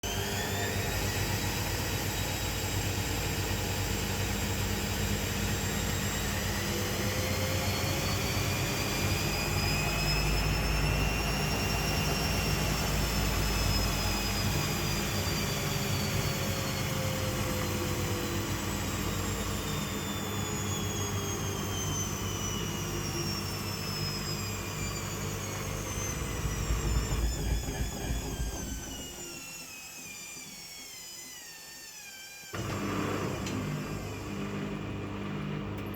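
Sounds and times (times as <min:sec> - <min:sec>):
washing machine motor whine: 0:00.0 - 0:35.9
deep rumble: 0:25.9 - 0:29.1.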